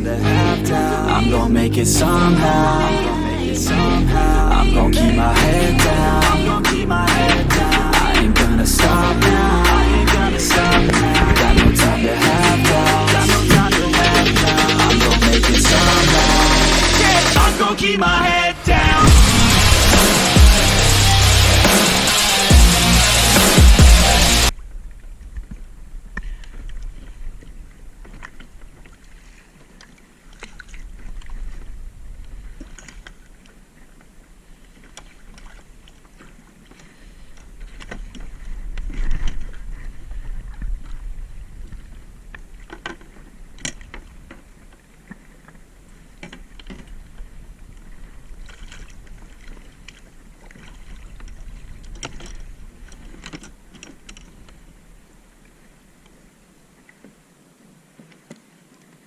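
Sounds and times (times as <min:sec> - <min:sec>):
low rumble: 0:00.0 - 0:25.0
water splashing against kayak: 0:24.6 - 0:59.0.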